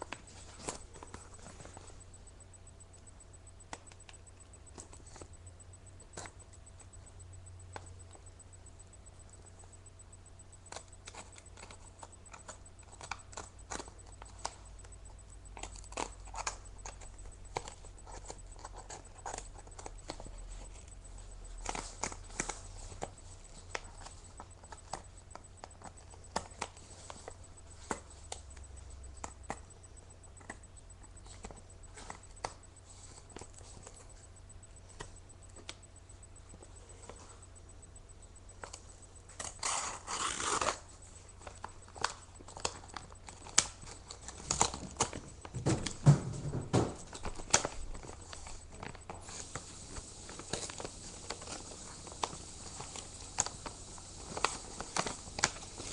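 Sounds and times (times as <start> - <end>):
low steady hum: 0.0 - 55.9
packaging crinkling and rustling: 39.3 - 55.9.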